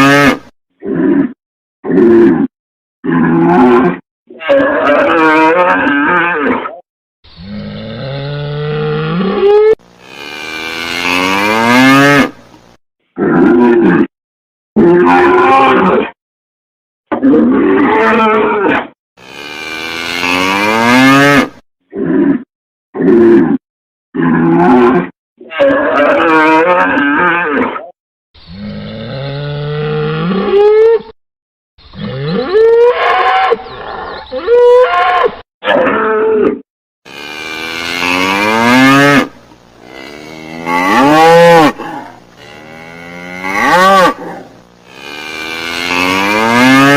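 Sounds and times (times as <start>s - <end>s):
cattle mooing: 7.4s - 12.4s, 19.2s - 21.5s, 37.1s - 46.9s.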